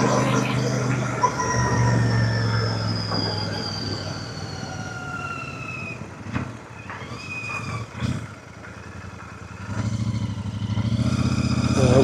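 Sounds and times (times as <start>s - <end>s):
motorcycle engine at low revs: 6.1s - 12.0s.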